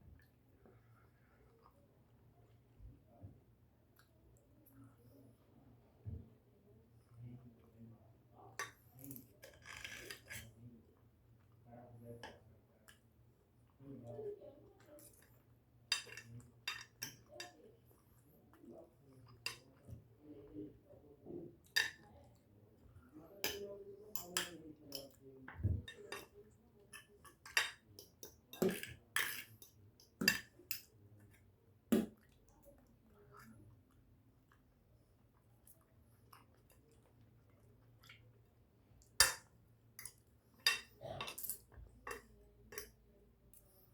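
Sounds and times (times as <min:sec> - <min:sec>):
cutlery clinking on a plate: 0:15.9 - 0:17.6, 0:23.4 - 0:30.9, 0:39.2 - 0:43.0.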